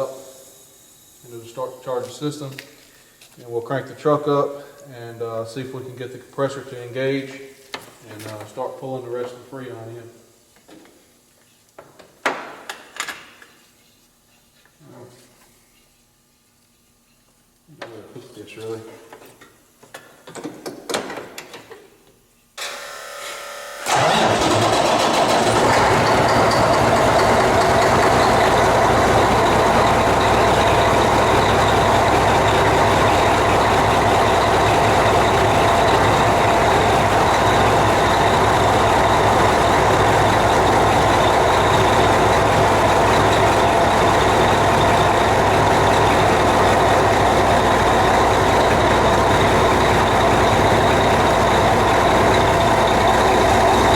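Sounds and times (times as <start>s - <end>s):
truck starter cranking: 23.8s - 53.9s
diesel engine idling: 23.9s - 53.9s.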